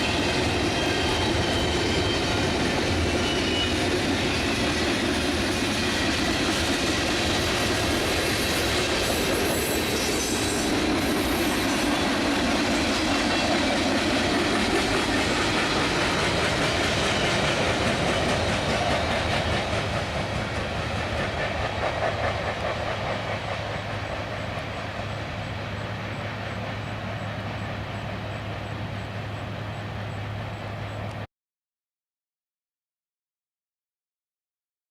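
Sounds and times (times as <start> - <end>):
freight train cars rolling: 0.0 - 31.2
wheels clicking over rail joints: 3.8 - 27.4.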